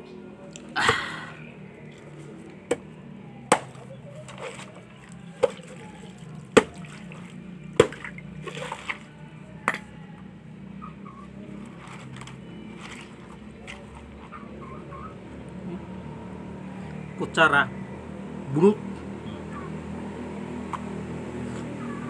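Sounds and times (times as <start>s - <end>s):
liquid sloshing: 3.5s - 9.9s, 11.4s - 14.5s.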